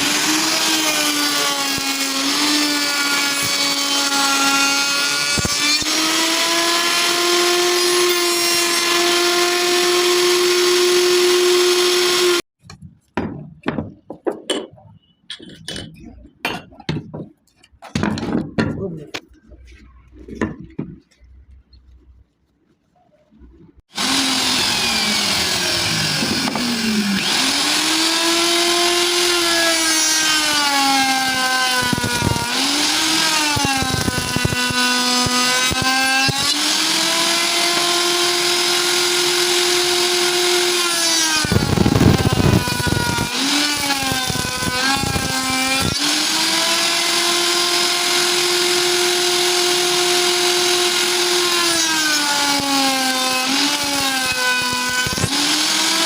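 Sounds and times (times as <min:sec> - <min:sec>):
rough wood cutting noise: 0:00.0 - 0:12.4, 0:23.9 - 0:56.0
wood router motor whine: 0:00.0 - 0:12.4, 0:23.9 - 0:56.0.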